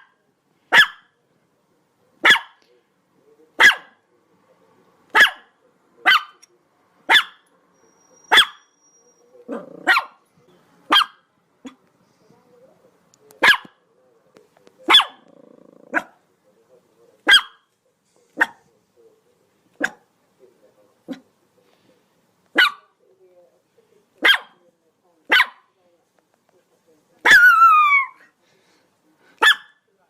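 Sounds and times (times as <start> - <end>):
dog barking: 0.0 - 1.2, 2.2 - 2.6, 3.6 - 4.0, 5.1 - 6.4, 7.0 - 7.5, 8.3 - 8.7, 9.4 - 10.2, 10.9 - 11.8, 13.4 - 13.8, 14.8 - 15.3, 15.9 - 16.2, 17.2 - 17.7, 18.4 - 18.7, 19.8 - 20.1, 22.5 - 22.9, 24.2 - 24.6, 25.3 - 25.7, 27.2 - 27.8, 29.4 - 29.9.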